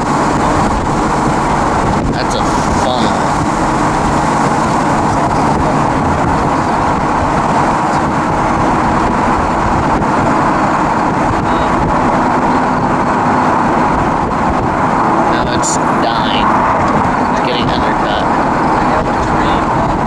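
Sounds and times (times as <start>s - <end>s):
car road and wind noise: 0.0s - 20.0s.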